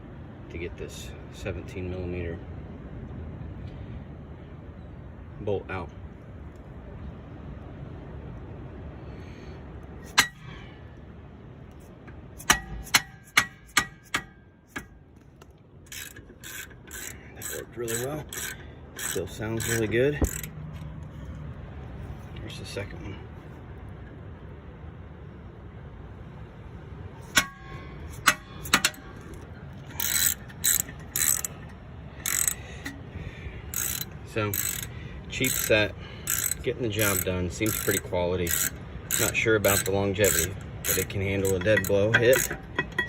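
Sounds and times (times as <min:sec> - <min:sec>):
hammer striking ratchet handle: 0:10.1 - 0:10.5, 0:12.4 - 0:15.0, 0:15.9 - 0:20.6, 0:27.2 - 0:33.0, 0:33.7 - 0:43.0
ratchet clicking: 0:12.4 - 0:21.2, 0:27.2 - 0:33.1, 0:33.7 - 0:43.0.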